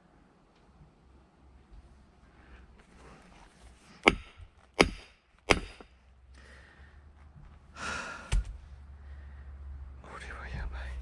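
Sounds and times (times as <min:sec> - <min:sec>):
hammer striking steel wedge: 0:04.0 - 0:06.0
person breathing out: 0:06.3 - 0:07.0, 0:07.7 - 0:09.6.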